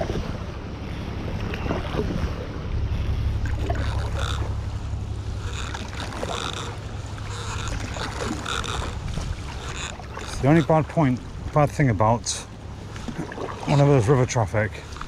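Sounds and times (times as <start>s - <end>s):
wind rumbling on microphone: 0.0s - 12.1s
paddle strokes in water: 5.2s - 15.0s.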